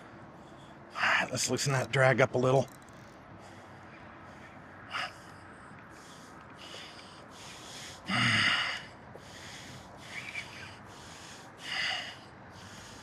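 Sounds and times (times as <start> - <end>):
man breathing hard: 3.3 - 13.0.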